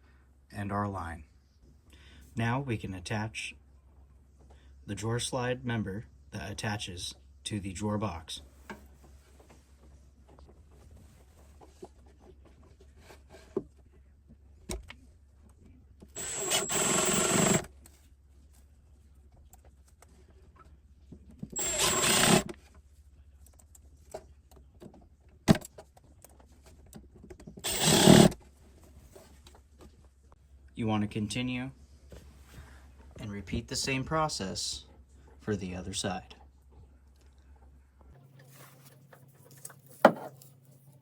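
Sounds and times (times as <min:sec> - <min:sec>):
power drill bursts: 0:16.2 - 0:17.7, 0:21.6 - 0:22.5, 0:27.6 - 0:28.4.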